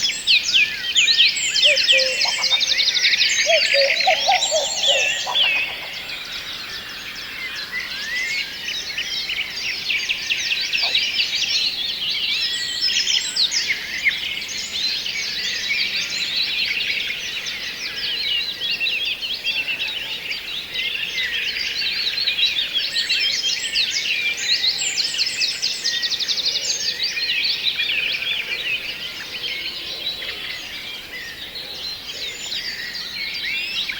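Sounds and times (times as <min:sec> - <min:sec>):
small birds chirping: 0:00.0 - 0:06.6
lower-pitched bird call: 0:01.1 - 0:06.6.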